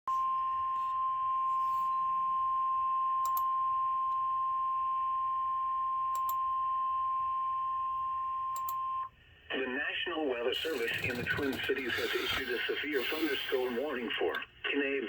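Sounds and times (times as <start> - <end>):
radio hiss: 9.5 - 15.0
steady alarm tone: 10.6 - 14.0.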